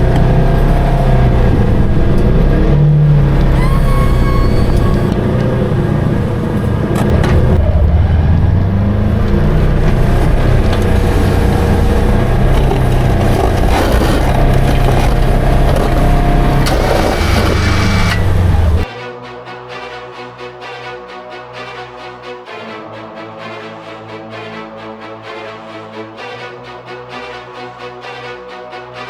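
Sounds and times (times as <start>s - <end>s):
utility vehicle engine under load: 0.0s - 18.9s.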